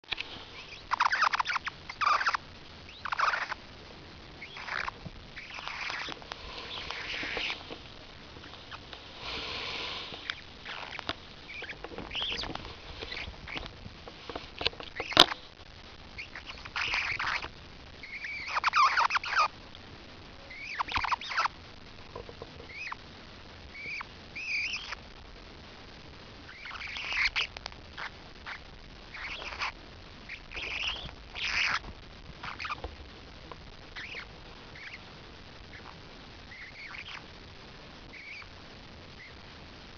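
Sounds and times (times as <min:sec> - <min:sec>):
parrotlet squeaky chattering: 0:00.6 - 0:03.6, 0:04.4 - 0:07.7, 0:10.2 - 0:13.7, 0:14.6 - 0:15.5, 0:16.2 - 0:19.5, 0:20.5 - 0:21.6, 0:22.6 - 0:23.0, 0:23.7 - 0:25.0, 0:26.5 - 0:32.8, 0:33.9 - 0:35.0, 0:35.7 - 0:37.3, 0:38.1 - 0:38.5, 0:39.2 - 0:39.4.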